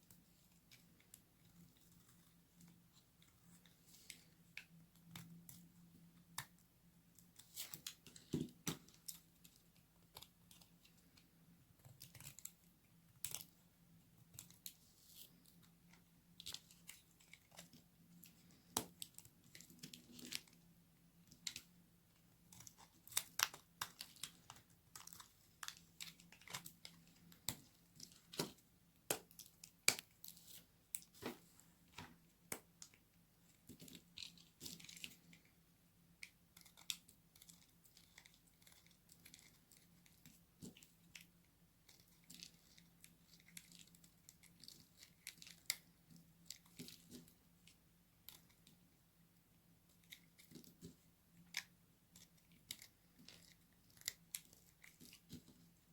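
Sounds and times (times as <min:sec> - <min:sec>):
knife crackling through dry soap: 0:50.0 - 0:55.8.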